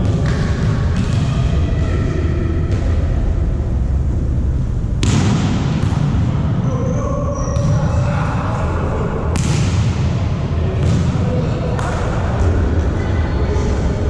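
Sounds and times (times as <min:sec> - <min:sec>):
low rumble: 0:00.0 - 0:06.7
volleyball being struck: 0:05.0 - 0:06.4, 0:09.4 - 0:10.1.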